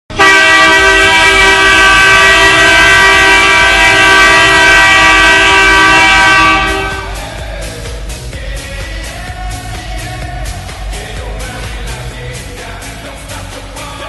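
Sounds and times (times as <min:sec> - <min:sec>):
hockey goal horn blast: 0:00.1 - 0:07.3.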